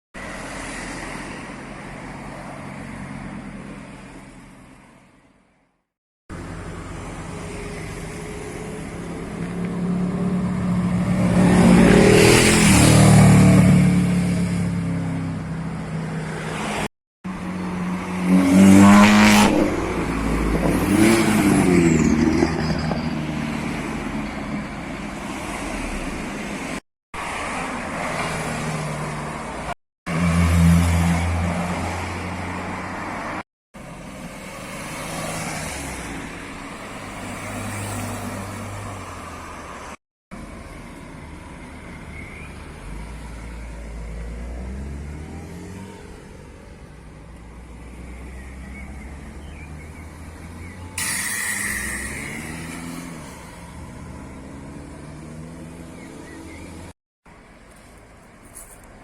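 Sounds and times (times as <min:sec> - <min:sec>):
car engines revving past: 0:06.9 - 0:33.4, 0:42.1 - 0:57.0.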